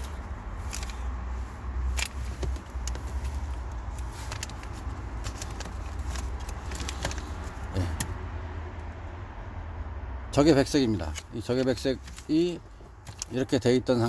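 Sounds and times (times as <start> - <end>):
hands handling wiring and connectors: 0.0 - 8.2, 10.9 - 13.6.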